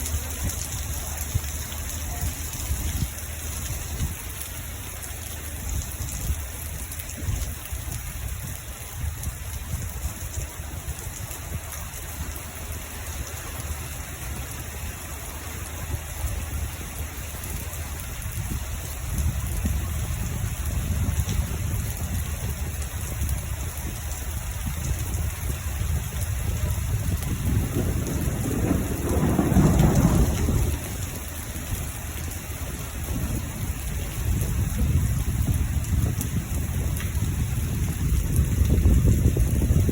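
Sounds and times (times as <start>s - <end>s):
steady rain: 0.0s - 39.9s
rolling thunder: 15.7s - 39.9s.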